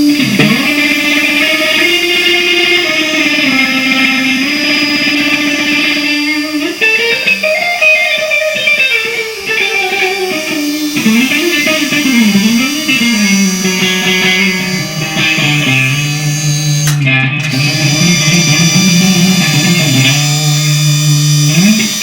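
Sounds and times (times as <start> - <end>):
plucked guitar melody: 14.2 - 18.4.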